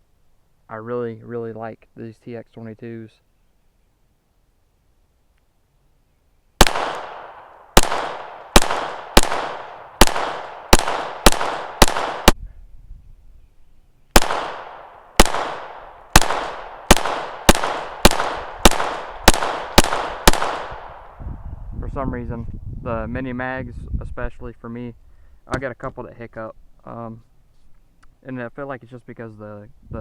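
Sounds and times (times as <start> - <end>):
pistol shots echoing: 6.6 - 12.4, 14.2 - 21.1.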